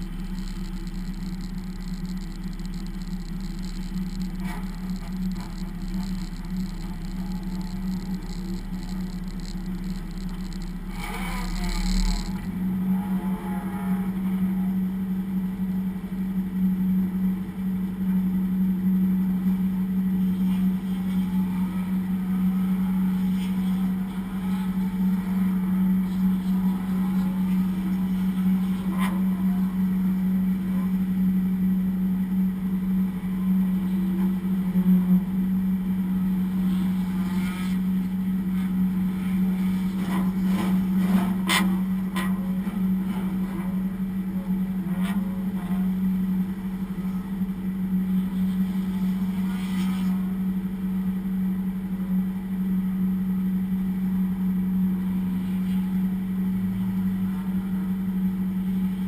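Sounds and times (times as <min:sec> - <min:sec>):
race car engine running: 0:00.0 - 0:59.0.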